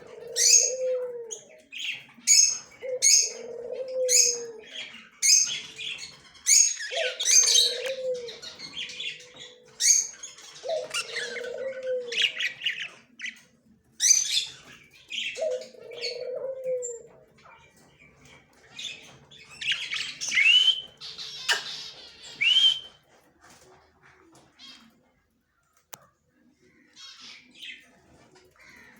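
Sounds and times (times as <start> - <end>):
low falling cooing call: 0.1 - 1.5, 6.9 - 10.0, 10.6 - 12.6.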